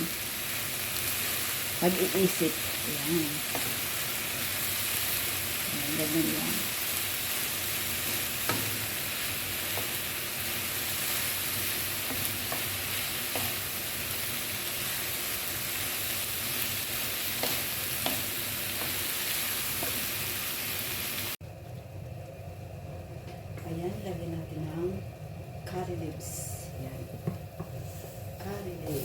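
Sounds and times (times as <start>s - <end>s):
beans sizzling in a pan: 0.0s - 21.4s, 27.2s - 29.0s
spatula scraping a pan: 27.6s - 29.0s.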